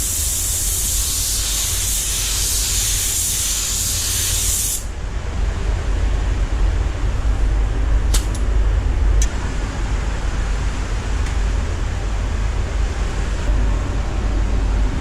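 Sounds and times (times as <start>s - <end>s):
spray gun hissing: 0.0s - 4.9s
low steady rumble: 4.9s - 15.0s.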